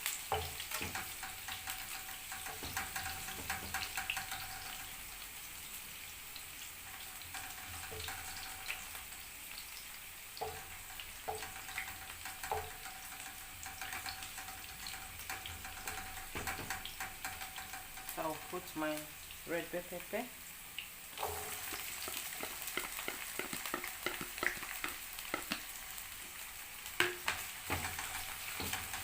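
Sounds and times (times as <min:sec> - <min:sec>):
onion sizzling in hot oil: 0:00.0 - 0:29.0.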